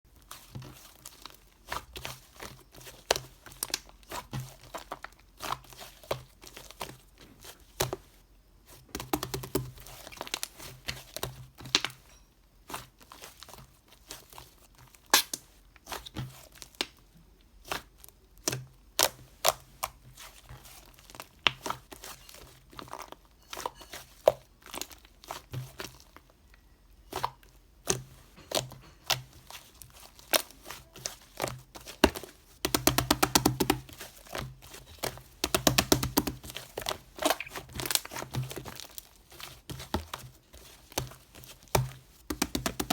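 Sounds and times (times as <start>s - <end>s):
crinkling and rustling: 0.1s - 42.9s
sharp clicks and taps: 42.3s - 42.9s.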